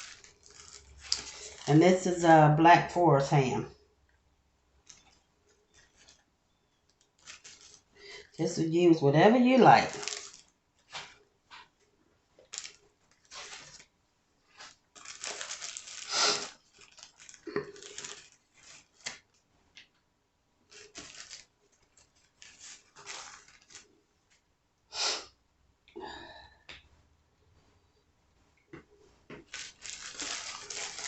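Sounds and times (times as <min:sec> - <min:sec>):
ham slices rustling and crinkling: 0:00.0 - 0:02.1, 0:04.8 - 0:08.6, 0:09.3 - 0:11.8, 0:12.4 - 0:19.9, 0:20.6 - 0:24.4, 0:28.8 - 0:31.0.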